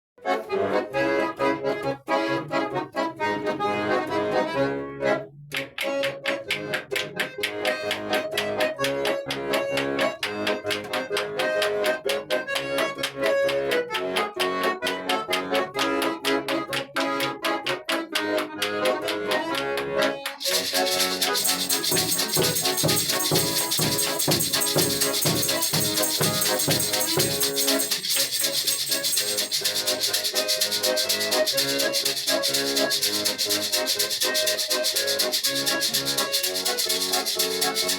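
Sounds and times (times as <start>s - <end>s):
instrumental music with steady beat: 0.3s - 37.9s
fast hissing rattle rhythm: 20.4s - 37.9s.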